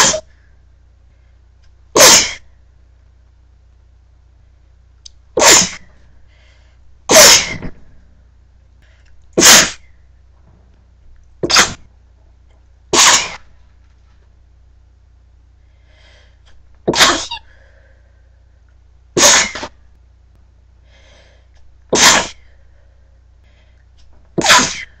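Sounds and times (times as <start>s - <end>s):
person sneezing: 0.0s - 0.4s, 2.0s - 2.5s, 5.4s - 6.0s, 7.1s - 7.8s, 9.4s - 9.9s, 11.4s - 11.8s, 13.0s - 13.4s, 16.9s - 17.6s, 19.2s - 19.8s, 21.9s - 22.5s, 24.4s - 25.0s.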